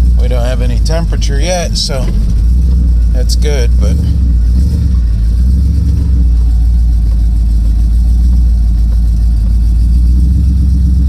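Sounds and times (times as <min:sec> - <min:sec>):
engine low rumble: 0:00.0 - 0:11.0.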